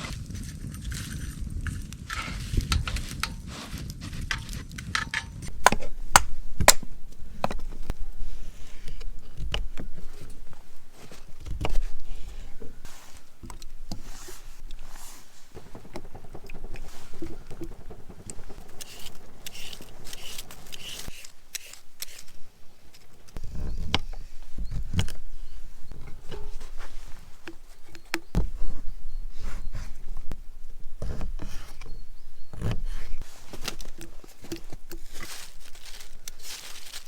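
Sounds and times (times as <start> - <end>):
sharp knocks and clicks: 9.0 - 21.1.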